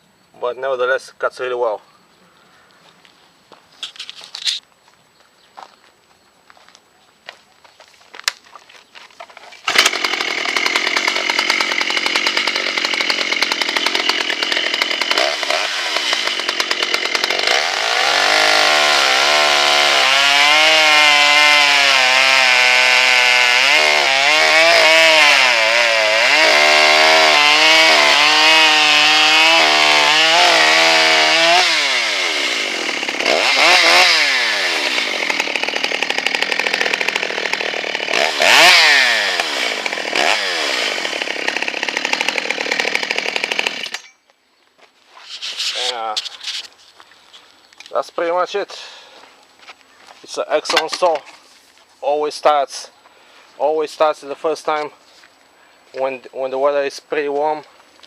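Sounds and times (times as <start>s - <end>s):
chainsaw cutting wood: 9.2s - 44.2s, 50.5s - 51.5s.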